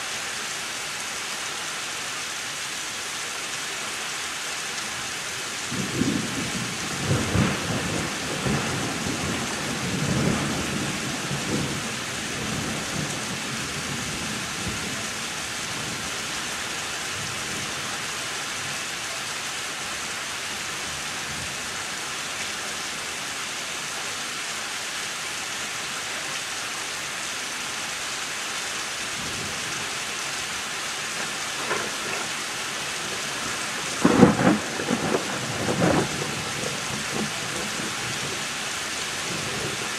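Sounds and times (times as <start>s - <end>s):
heavy rain falling: 0.0s - 39.9s
thunder rumbling: 5.7s - 13.1s, 31.2s - 38.5s.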